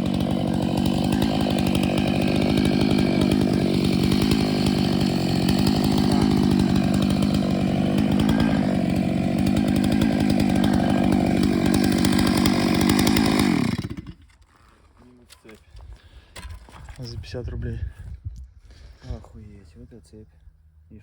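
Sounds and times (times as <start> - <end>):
chainsaw sawing log: 0.0 - 14.6.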